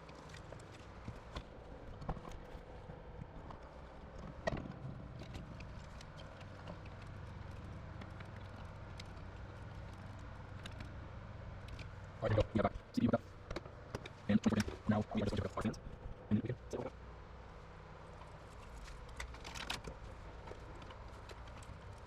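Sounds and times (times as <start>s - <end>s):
steady hardware hum: 11.3s - 17.6s.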